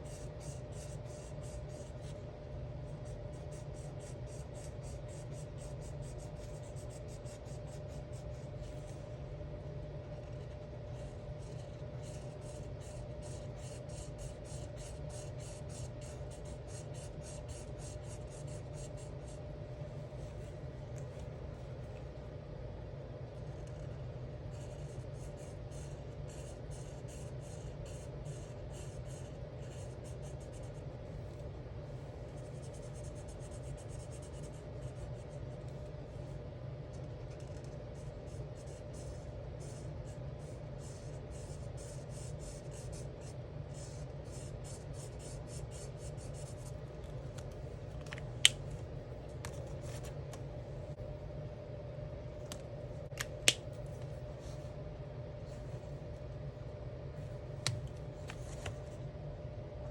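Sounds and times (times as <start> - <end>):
steady low hum: 0.0 - 59.9.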